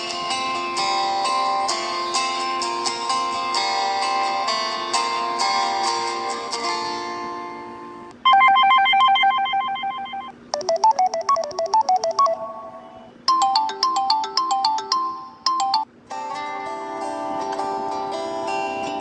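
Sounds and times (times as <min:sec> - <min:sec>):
phone ringtone melodies: 0:08.2 - 0:15.9
electronic chime melodies: 0:08.3 - 0:15.8.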